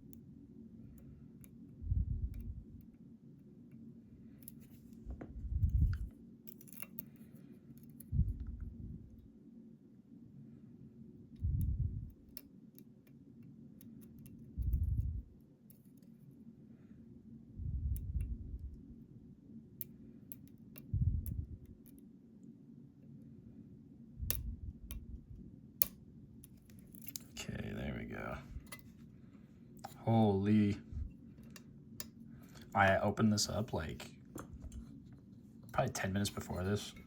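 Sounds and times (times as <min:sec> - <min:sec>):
soft low bumps: 0:01.8 - 0:02.8, 0:05.0 - 0:06.1, 0:08.1 - 0:09.2, 0:11.4 - 0:12.2, 0:14.6 - 0:15.3, 0:17.6 - 0:18.8, 0:20.8 - 0:21.7, 0:24.2 - 0:25.4
lock pick metallic clicks: 0:05.7 - 0:07.2, 0:25.8 - 0:27.4.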